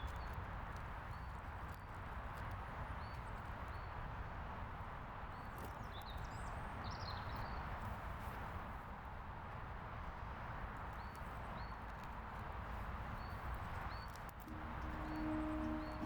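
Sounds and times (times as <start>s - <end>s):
bird chirps: 14.5s - 16.0s.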